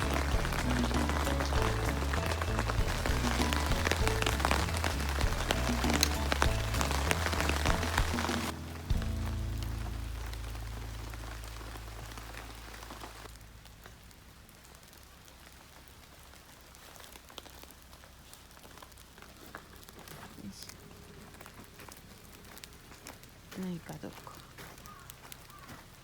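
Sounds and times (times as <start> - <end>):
drops ticking: 0.0 - 13.8
rain falling: 0.0 - 26.0.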